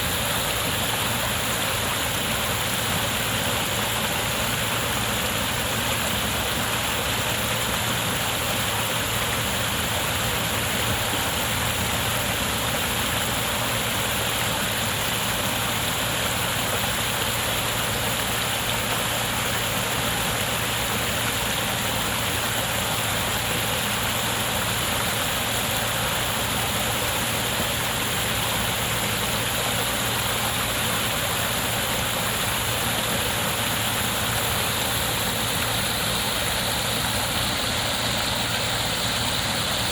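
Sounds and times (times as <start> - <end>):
waterfall rushing: 28.7 - 39.9.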